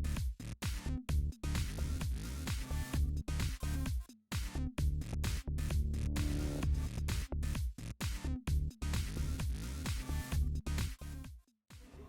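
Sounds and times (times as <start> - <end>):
electronic dance music: 1.5 - 4.6, 5.3 - 7.2, 8.0 - 11.2.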